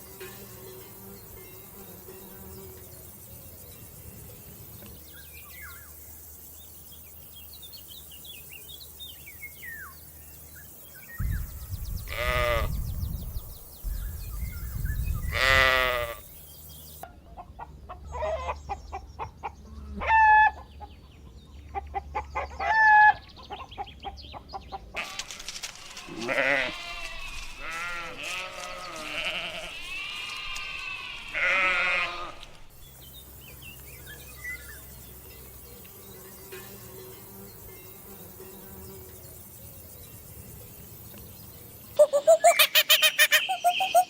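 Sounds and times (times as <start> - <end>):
farm animal wavering bleats: 12.1 - 12.8, 15.3 - 16.2, 25.0 - 32.5.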